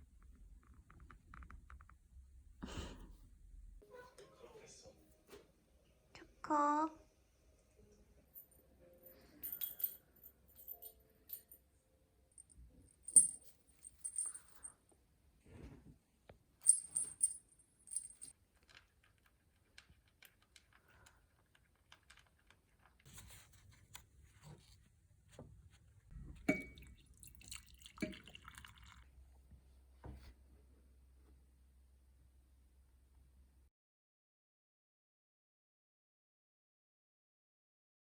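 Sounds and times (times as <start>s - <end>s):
light metallic jingling: 9.4s - 11.6s, 12.4s - 14.8s, 16.6s - 18.3s.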